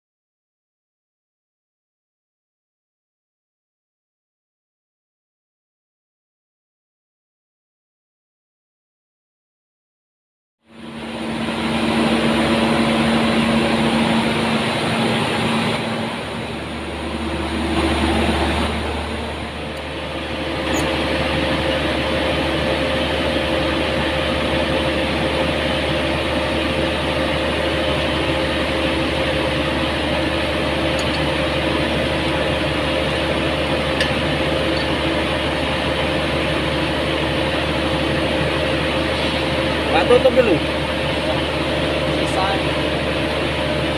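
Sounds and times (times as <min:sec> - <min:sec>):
machinery pump and motor hum: 0:10.7 - 0:43.9.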